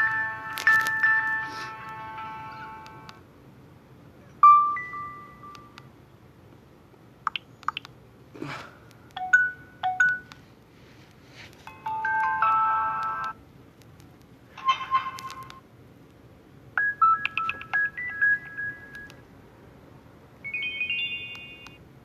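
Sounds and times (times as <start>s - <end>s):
phone jingle: 0.0s - 3.1s, 4.4s - 5.8s, 9.2s - 10.3s, 11.7s - 13.4s, 16.8s - 19.2s, 20.4s - 21.8s
phone alert tones: 4.4s - 5.8s, 9.2s - 10.3s, 11.7s - 13.4s, 16.8s - 19.2s, 20.5s - 21.8s.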